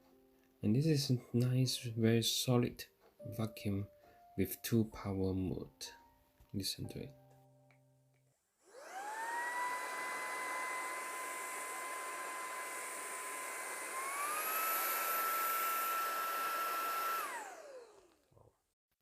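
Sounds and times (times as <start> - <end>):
handheld vacuum motor whine: 8.6 - 18.5.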